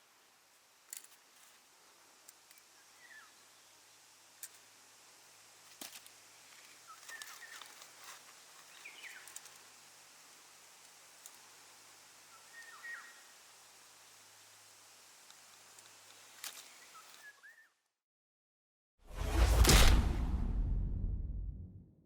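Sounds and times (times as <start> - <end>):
faint bird chirps: 12.3 - 13.3, 16.6 - 17.9.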